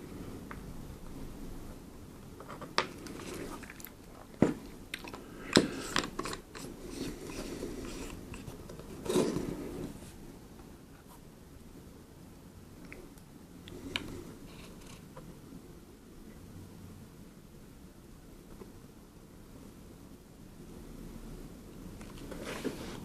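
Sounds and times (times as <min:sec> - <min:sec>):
rustling scrape: 0:06.6 - 0:10.2, 0:22.2 - 0:23.0.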